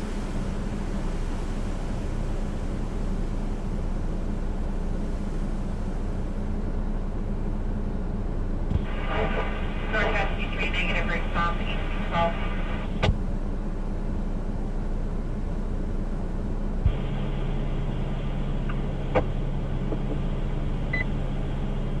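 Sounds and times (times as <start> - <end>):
low carrier hum: 0.0 - 22.0
radio receiver hiss: 8.8 - 13.1, 16.9 - 19.3.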